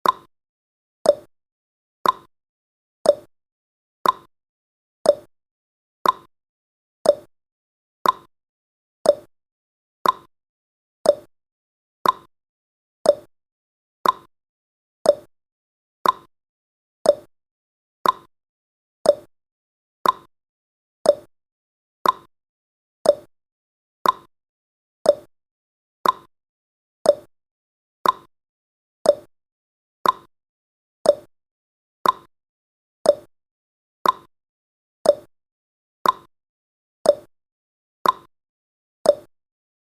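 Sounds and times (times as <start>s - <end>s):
clock ticking: 2.0s - 2.3s, 4.0s - 4.3s, 6.0s - 6.3s, 8.0s - 8.3s, 10.0s - 10.3s, 12.0s - 12.3s, 14.0s - 14.3s, 16.0s - 16.3s, 18.0s - 18.3s, 20.0s - 20.3s, 21.1s - 21.3s, 22.0s - 22.3s, 24.0s - 24.3s, 26.0s - 26.3s, 28.0s - 28.3s, 29.1s - 29.3s, 30.0s - 30.3s, 31.1s - 31.3s, 32.0s - 32.3s, 33.1s - 33.3s, 34.0s - 34.3s, 35.1s - 35.3s, 36.0s - 36.3s, 38.0s - 38.3s.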